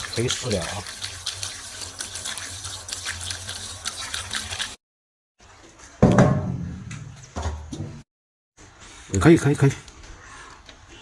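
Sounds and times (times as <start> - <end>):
liquid pouring into a tank: 0.0 - 4.8
loud knock: 6.0 - 6.8.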